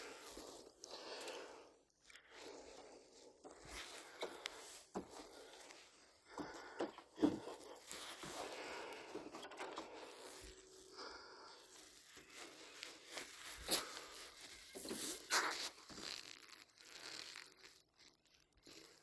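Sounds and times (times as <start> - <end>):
leaves rustling and crunching: 11.7 - 18.9.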